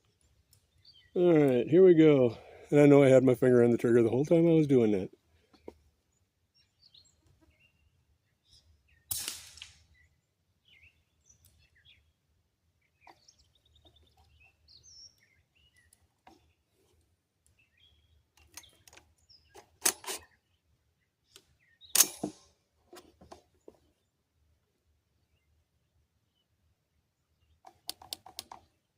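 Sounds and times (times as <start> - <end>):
small birds chirping: 0.0 - 9.2, 9.8 - 22.0, 22.8 - 28.9
rifle shot: 9.1 - 9.9, 22.0 - 22.5
rifle handling clicks and knocks: 18.3 - 20.2, 21.3 - 23.8, 27.6 - 28.7.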